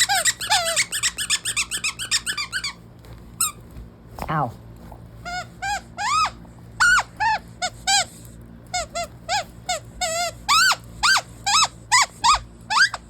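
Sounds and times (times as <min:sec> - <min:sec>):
squeaky toy squeaking: 0:00.0 - 0:02.8, 0:05.3 - 0:08.1, 0:08.7 - 0:13.0.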